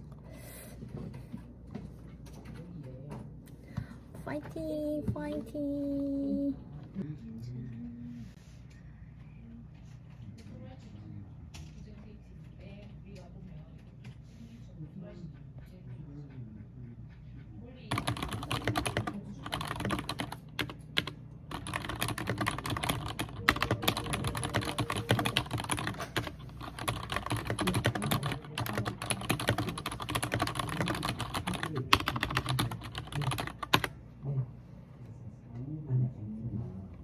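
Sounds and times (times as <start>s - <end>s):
fast typing on keyboard: 17.9s - 34.0s.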